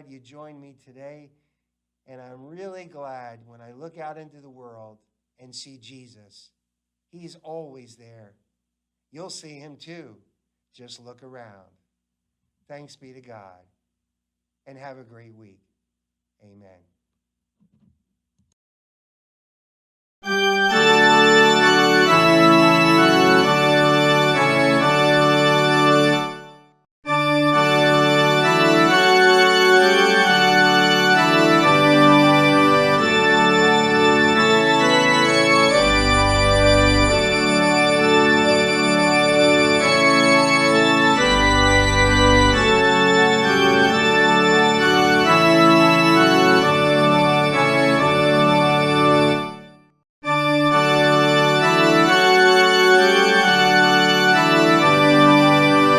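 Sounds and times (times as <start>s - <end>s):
deep organ pedal bass notes: 20.3s - 26.4s, 27.1s - 49.6s, 50.4s - 55.9s
organ playing sustained chords: 20.3s - 26.5s, 27.1s - 49.7s, 50.3s - 55.9s.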